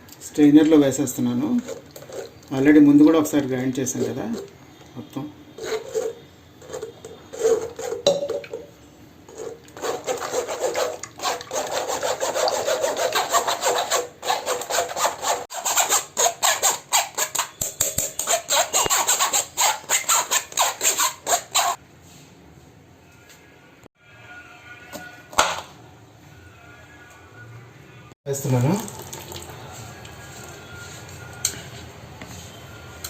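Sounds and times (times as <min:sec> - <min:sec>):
pulp scraped through strainer: 0:01.5 - 0:02.5, 0:05.5 - 0:08.0, 0:09.3 - 0:17.6.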